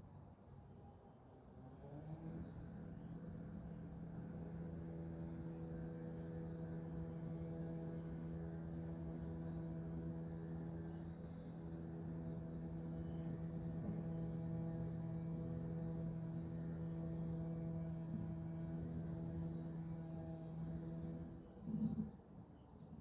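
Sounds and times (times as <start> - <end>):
steady low hum: 4.2 - 22.1.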